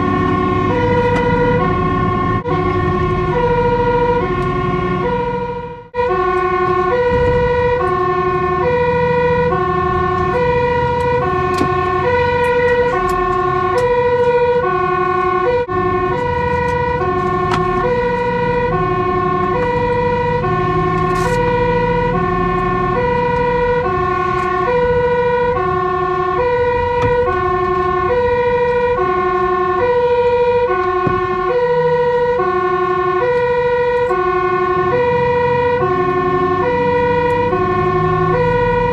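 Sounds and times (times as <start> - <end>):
truck engine rumble: 0.0 - 38.9
two-tone siren: 0.0 - 38.9.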